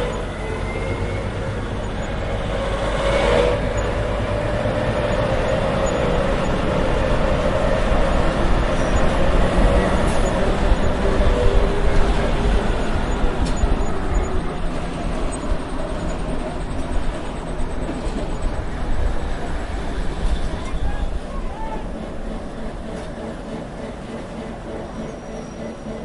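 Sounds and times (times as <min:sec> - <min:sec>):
diesel train engine droning: 0:00.0 - 0:26.0.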